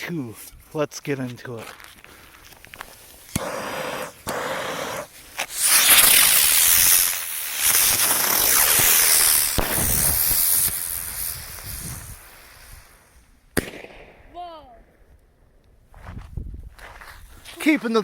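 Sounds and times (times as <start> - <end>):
spinner fireworks whizzing: 2.7 - 14.4
fuse hissing: 3.3 - 13.3
sharp crack: 3.3 - 15.0.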